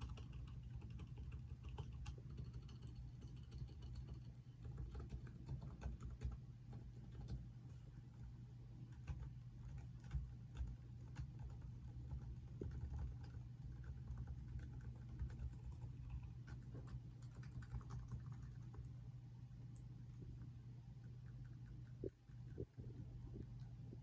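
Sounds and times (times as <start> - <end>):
soft keyboard keystrokes: 0.0 - 7.5, 8.9 - 18.9
low steady hum: 0.0 - 24.0.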